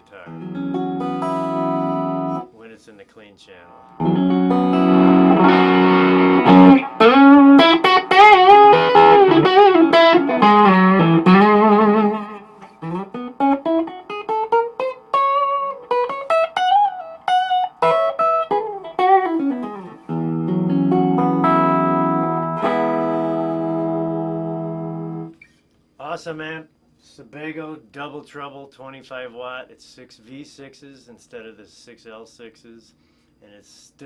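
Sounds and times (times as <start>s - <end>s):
electric guitar lead lines: 0.1s - 2.5s, 3.6s - 25.4s.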